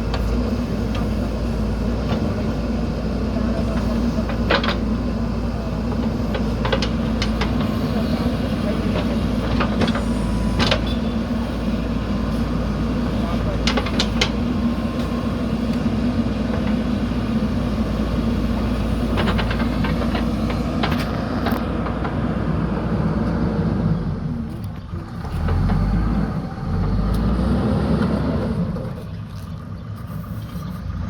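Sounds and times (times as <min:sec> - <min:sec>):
diesel engine running: 0:00.0 - 0:31.0.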